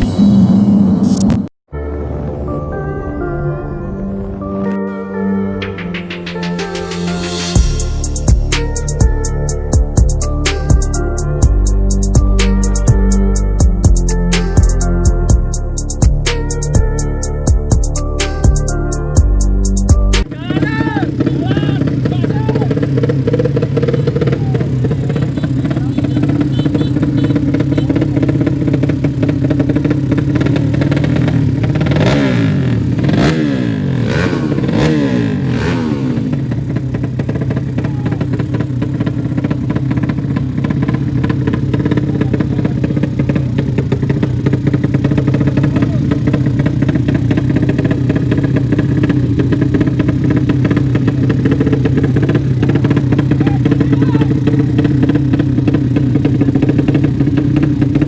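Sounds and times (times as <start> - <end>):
motorcycle engines revving: 20.2 - 58.0.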